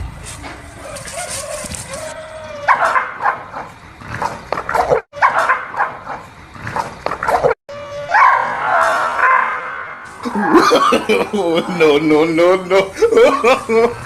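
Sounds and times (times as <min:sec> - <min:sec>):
dog barking: 0:01.1 - 0:03.7, 0:04.7 - 0:06.3, 0:07.3 - 0:10.0.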